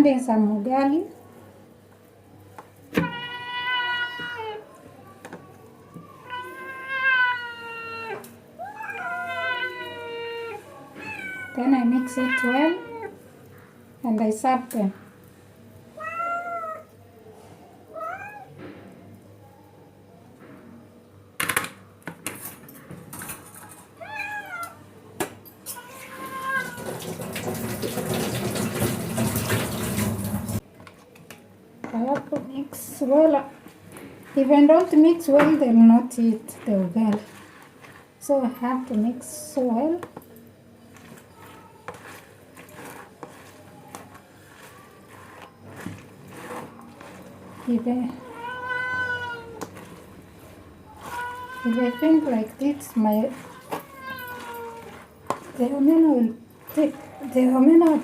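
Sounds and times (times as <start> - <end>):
food mixed by hand in bowl: 2.0 - 15.4, 31.9 - 58.0
cats meowing: 3.0 - 4.7, 5.8 - 13.2, 16.0 - 16.9, 17.9 - 18.5, 24.0 - 24.8, 25.7 - 27.0, 48.1 - 50.0, 50.8 - 52.4, 53.3 - 55.0
utensil scraping a dish: 32.7 - 58.0.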